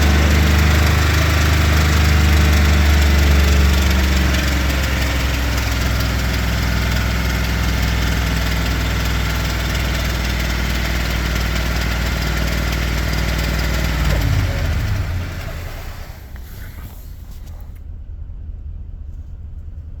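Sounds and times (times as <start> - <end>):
truck engine idling: 0.0 - 19.9
engine ticking and knocking: 0.0 - 20.0
low rumble: 13.7 - 20.0.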